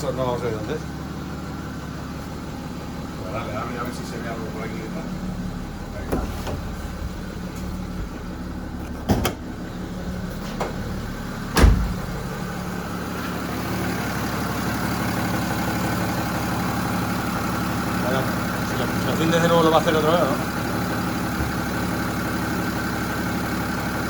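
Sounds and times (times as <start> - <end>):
diesel engine idling: 0.0 - 24.0
deep thump: 5.9 - 9.5, 10.2 - 12.7.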